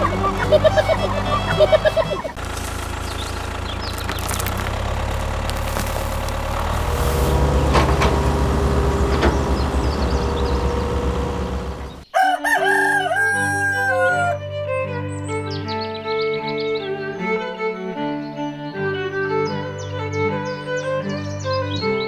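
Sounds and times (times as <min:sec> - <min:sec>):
low engine hum: 0:00.0 - 0:12.1
rooster crowing: 0:10.1 - 0:14.4.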